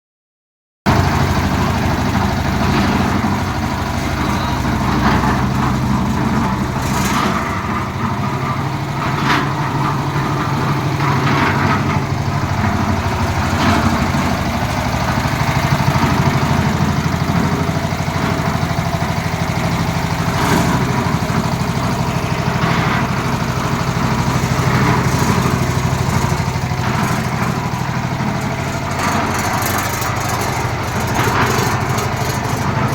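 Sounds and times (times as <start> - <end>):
concrete mixer engine running: 0.9 - 32.9
short clatters: 24.7 - 32.9.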